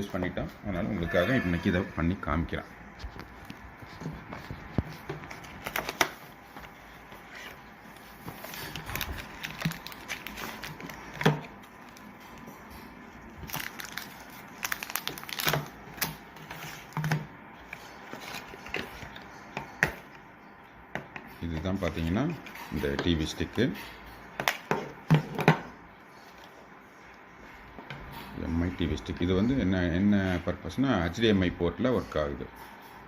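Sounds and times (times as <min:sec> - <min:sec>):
packaging crinkling: 0:02.9 - 0:19.4
packaging clicks and knocks: 0:04.7 - 0:06.2, 0:08.2 - 0:12.0, 0:13.4 - 0:17.3.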